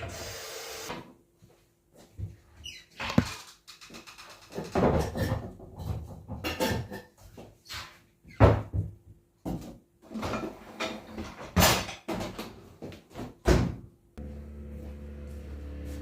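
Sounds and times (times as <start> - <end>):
things clattering on shelves: 4.5 - 13.8
cupboard doors opening and closing: 13.2 - 13.9.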